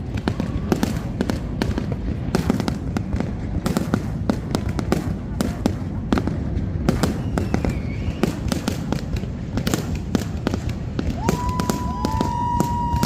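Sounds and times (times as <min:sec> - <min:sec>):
fireworks bangs and crackles: 0:00.0 - 0:13.0
high whistling tone: 0:07.1 - 0:08.5.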